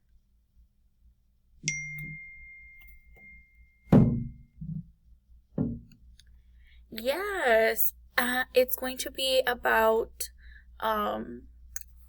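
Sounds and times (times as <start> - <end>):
bright ringing ding: 1.7 - 4.5
loud thump: 3.9 - 4.9, 5.6 - 6.0
soft knock: 3.9 - 4.9, 5.6 - 6.0.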